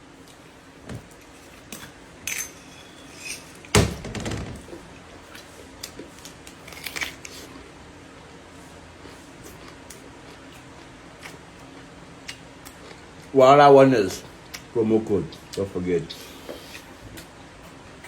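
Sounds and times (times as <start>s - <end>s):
loud knock: 3.8s - 4.7s.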